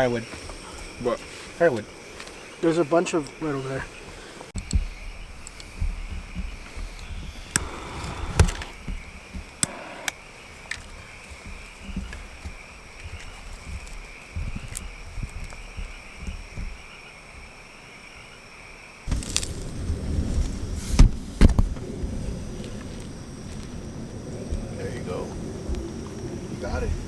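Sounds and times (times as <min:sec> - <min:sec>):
high insect drone: 0:00.0 - 0:27.0
sharp snaps: 0:07.0 - 0:10.8
low thumps of movement: 0:19.1 - 0:27.0.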